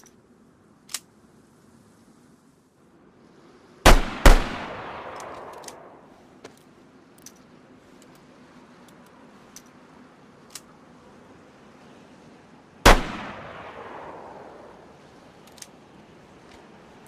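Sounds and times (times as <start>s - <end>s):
pistol shot with echo: 3.9s - 6.0s, 12.9s - 14.8s
faint clicks: 5.1s - 9.8s, 15.2s - 16.8s.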